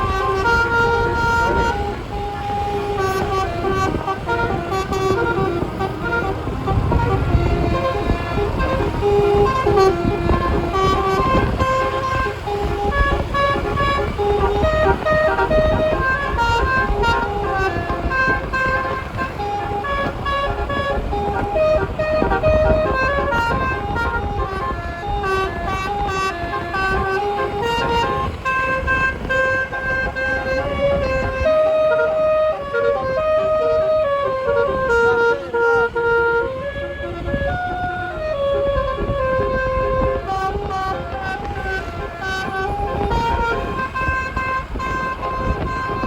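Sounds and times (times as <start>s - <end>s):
musical air horn tune: 0.0s - 46.0s
low rumble: 3.4s - 10.8s.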